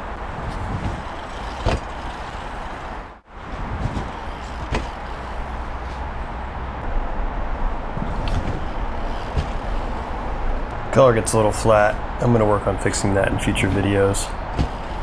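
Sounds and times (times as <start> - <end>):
bike tyre noise: 0.0 - 15.0
bike knocking over bumps: 0.3 - 5.2, 8.0 - 9.9, 14.4 - 15.0.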